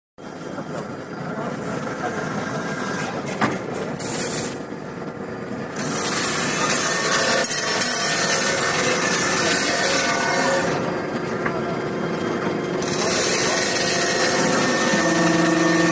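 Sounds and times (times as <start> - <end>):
machine mechanical din: 5.6 - 15.9.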